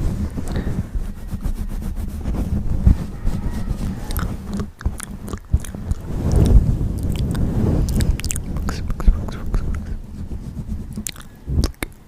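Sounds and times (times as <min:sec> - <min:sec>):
low rumble: 0:00.0 - 0:11.7
insects chewing with crunching clicks: 0:03.6 - 0:10.0, 0:10.9 - 0:12.0.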